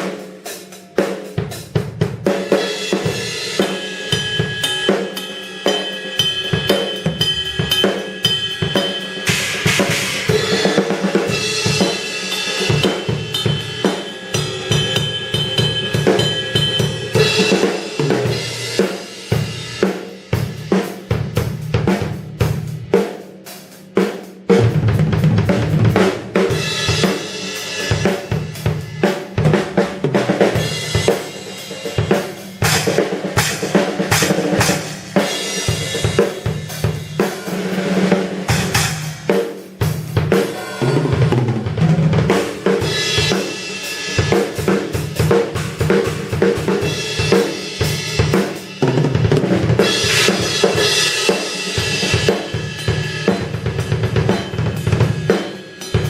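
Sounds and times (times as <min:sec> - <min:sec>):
drum kit playing: 0:00.0 - 0:56.0
crash cymbals ringing: 0:02.7 - 0:19.8.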